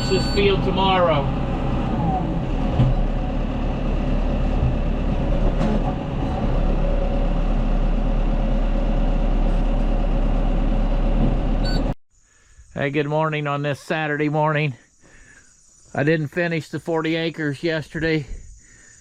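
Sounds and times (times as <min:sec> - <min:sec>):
round baler working: 0:00.0 - 0:11.9
tractor engine running: 0:00.0 - 0:12.0.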